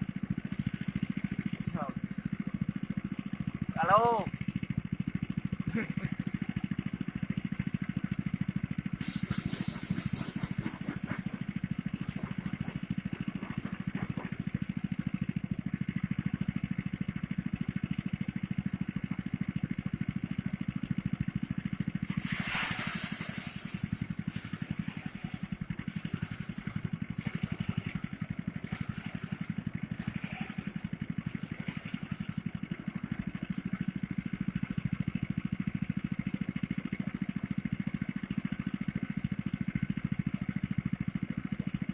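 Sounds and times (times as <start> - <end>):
small engine running: 0.0 - 41.9
brief hissing rushes: 9.0 - 10.6, 22.1 - 23.9.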